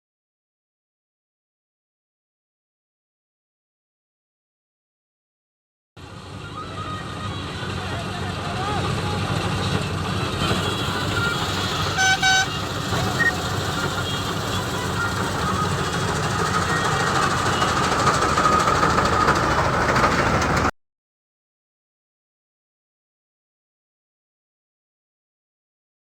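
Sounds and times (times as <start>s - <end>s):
harvesting machinery engine drone: 6.0s - 20.7s
horn toots: 10.5s - 18.2s.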